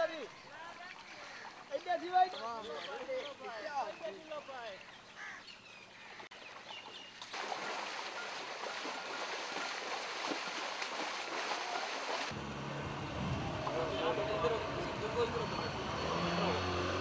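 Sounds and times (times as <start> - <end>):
rushing floodwater: 0.0 - 5.4, 6.3 - 15.2.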